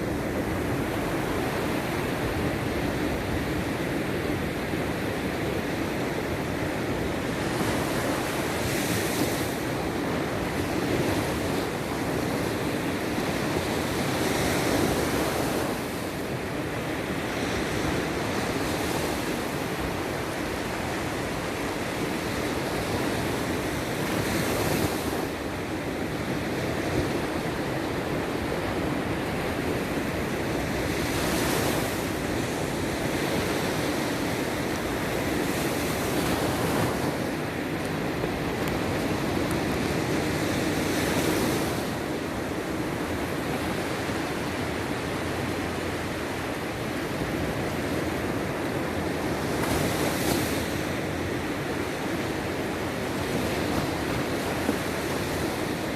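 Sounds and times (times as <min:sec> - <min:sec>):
waves breaking: 0:00.0 - 0:55.9.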